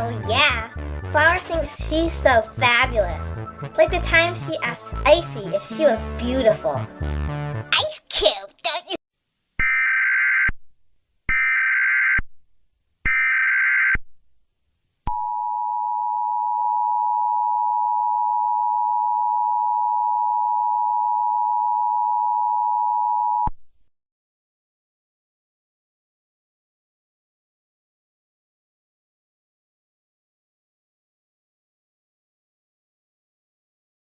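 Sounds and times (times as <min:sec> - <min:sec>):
data header bursts: 0:00.0 - 0:08.0.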